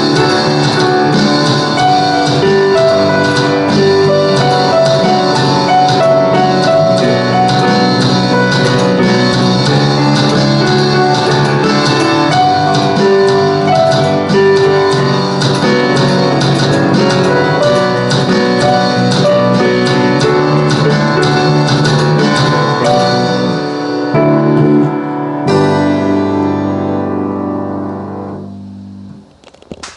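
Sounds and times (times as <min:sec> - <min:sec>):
drum kit: 0:00.0 - 0:27.3
bass: 0:00.0 - 0:29.9
piano: 0:00.0 - 0:29.9.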